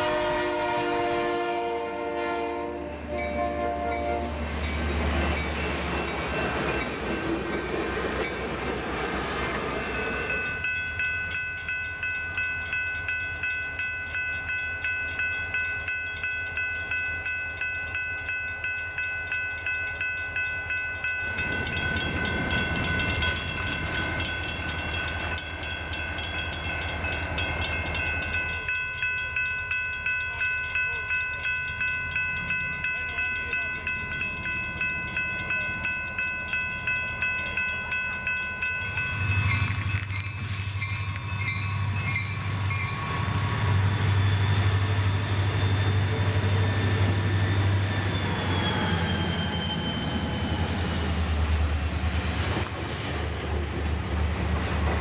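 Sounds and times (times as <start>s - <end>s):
train horn: 0.0s - 4.6s
rail noise: 0.0s - 55.0s
regular ringing beat: 10.0s - 40.0s
locomotives rumbling past: 38.6s - 55.0s.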